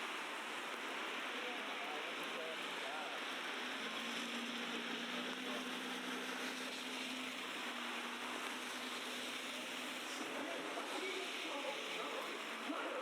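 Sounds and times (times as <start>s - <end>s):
crowd noise: 9.8s - 13.0s.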